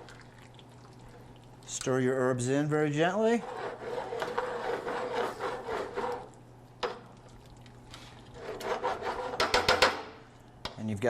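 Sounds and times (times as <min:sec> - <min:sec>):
spoon scraping a pan: 0:03.3 - 0:06.4, 0:08.3 - 0:09.9.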